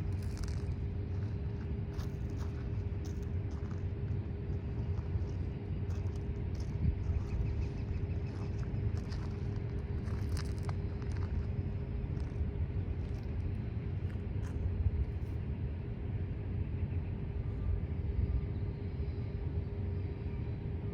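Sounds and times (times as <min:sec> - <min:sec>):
constant hum: 0:00.0 - 0:20.9
low vehicle rumble: 0:00.0 - 0:20.9.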